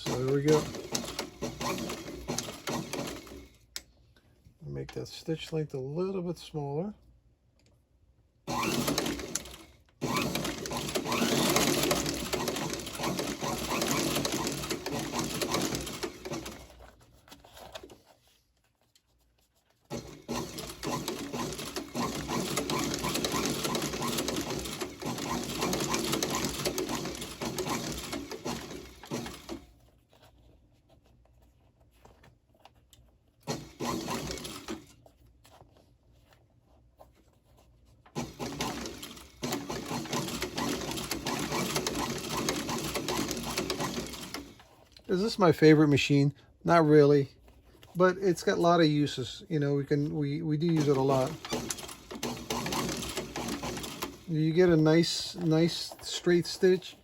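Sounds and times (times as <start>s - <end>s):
sewing machine stitching leather: 0.0s - 3.8s, 8.5s - 18.4s, 19.8s - 30.3s, 33.3s - 35.6s, 38.1s - 45.9s, 47.8s - 57.0s.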